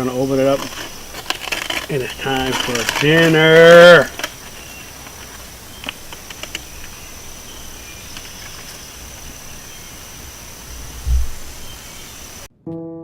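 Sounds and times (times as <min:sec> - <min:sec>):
insects chirring: 0:00.0 - 0:12.5
low thump: 0:11.0 - 0:11.4.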